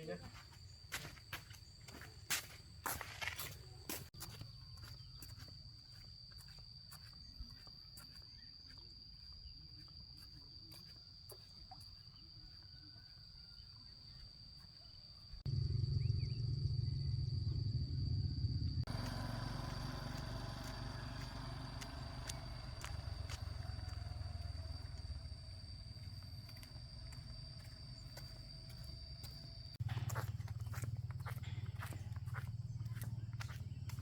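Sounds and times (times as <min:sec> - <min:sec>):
insects trilling: 0:00.0 - 0:34.0
loud low rumble: 0:15.5 - 0:22.6.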